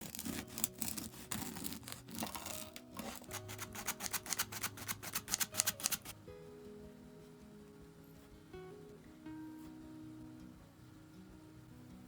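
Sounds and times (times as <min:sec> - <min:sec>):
rasping strokes on food: 0:00.0 - 0:06.1
soft background music: 0:00.0 - 0:12.0.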